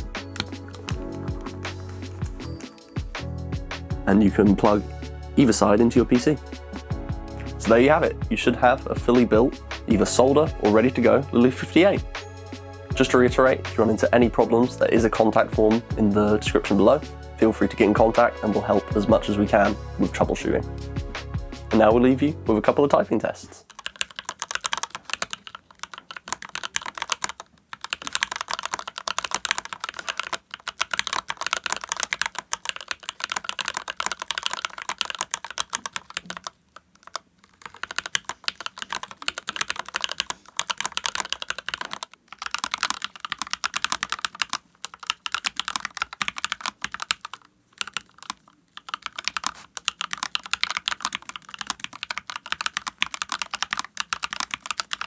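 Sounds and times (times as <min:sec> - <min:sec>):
fast typing on mechanical keyboard: 0:23.6 - 0:55.0.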